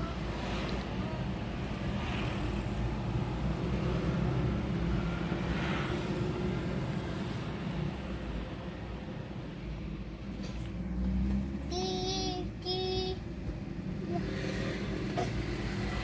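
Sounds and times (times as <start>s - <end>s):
motor vehicle rumbling: 0.0s - 16.0s.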